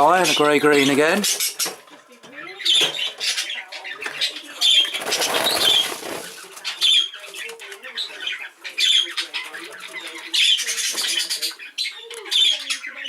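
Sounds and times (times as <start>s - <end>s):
budgerigars chattering: 0.0s - 1.8s, 2.4s - 13.0s
wings flapping: 4.6s - 7.6s.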